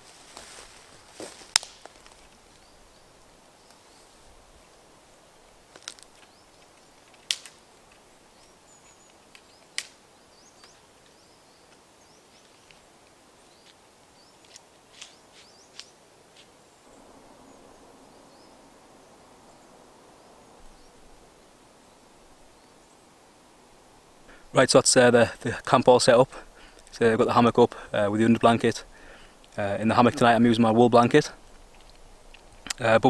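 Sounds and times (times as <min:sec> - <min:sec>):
soft hiss: 0:00.0 - 0:33.0
faint bird chirps: 0:08.1 - 0:12.8, 0:16.6 - 0:23.3.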